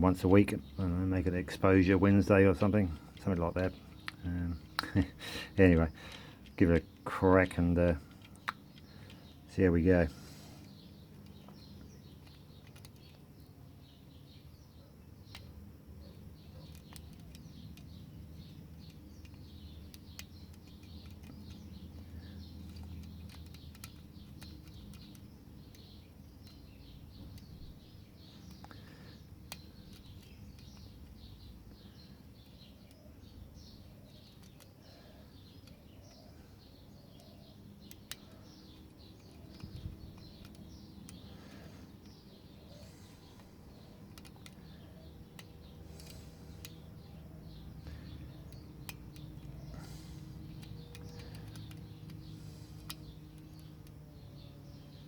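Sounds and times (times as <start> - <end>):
faint birds chirping: 0.0 - 55.0
lock-picking tool clicks: 3.1 - 5.1, 8.2 - 9.5, 15.2 - 55.0.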